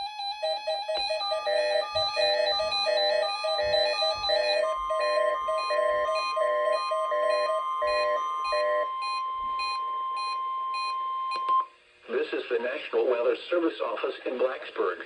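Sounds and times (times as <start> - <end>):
repeating electronic chime: 0.0 - 11.4
steady alarm tone: 0.0 - 11.7.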